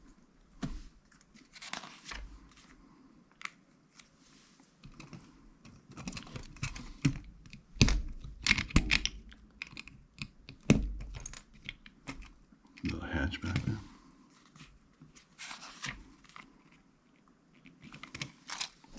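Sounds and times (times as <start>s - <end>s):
plastic bricks clicking together: 4.9s - 12.9s
plastic bricks snapping: 6.0s - 12.3s.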